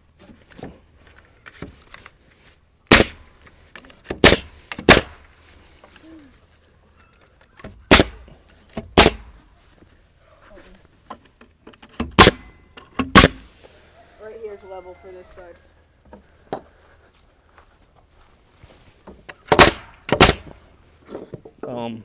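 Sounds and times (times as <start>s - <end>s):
nail gun firing: 2.9s - 3.2s, 4.1s - 5.2s, 7.9s - 8.3s, 9.0s - 9.4s, 12.1s - 13.5s, 19.5s - 20.6s.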